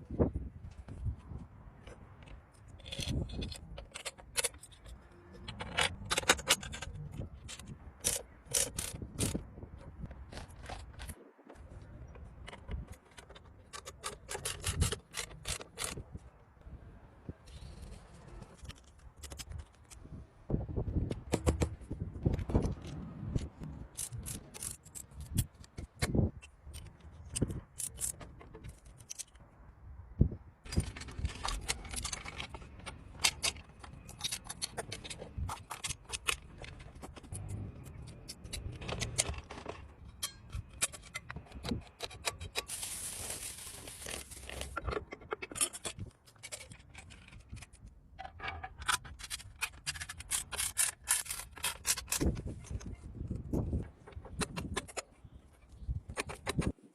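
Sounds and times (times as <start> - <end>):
scraping and rubbing metal parts: 30.7 - 53.1.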